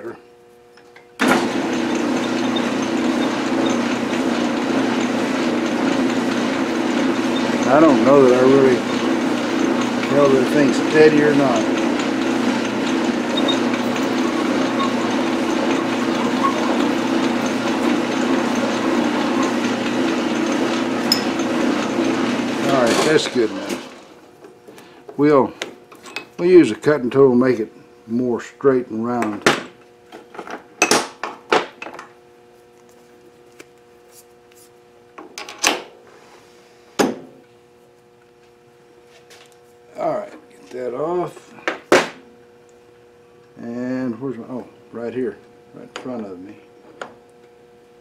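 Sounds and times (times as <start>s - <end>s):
metal lathe humming: 0.7s - 28.3s
metal tools knocking: 21.0s - 21.5s.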